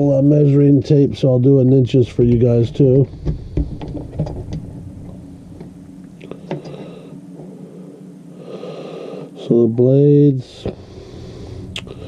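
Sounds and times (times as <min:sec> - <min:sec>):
steady low hum: 0:00.0 - 0:12.0
light handling clicks and knocks: 0:02.2 - 0:05.8.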